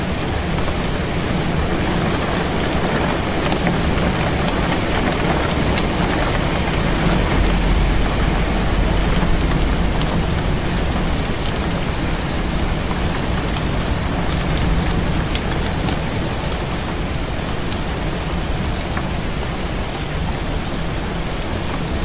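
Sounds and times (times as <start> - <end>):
heavy rain on a window: 0.0 - 22.0
low rumble: 4.3 - 15.6.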